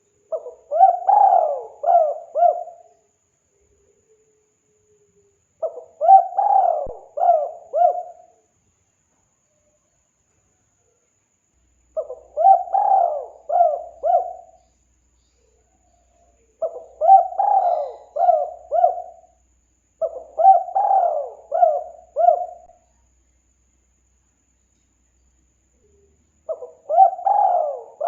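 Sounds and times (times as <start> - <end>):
dove cooing: 0.0 - 2.9, 5.6 - 8.3, 12.0 - 14.6, 16.6 - 19.3, 20.0 - 22.8, 26.5 - 28.0.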